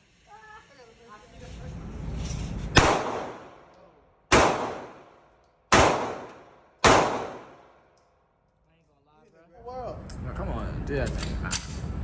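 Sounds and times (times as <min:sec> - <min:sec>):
gunshots with echo: 0:02.8 - 0:03.7, 0:04.3 - 0:07.8.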